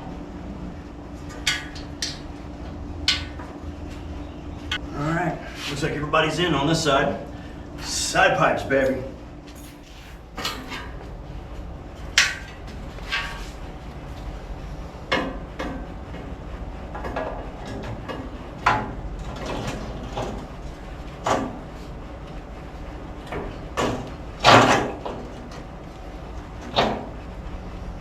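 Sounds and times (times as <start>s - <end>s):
metal tools clanking: 8.7s - 11.0s.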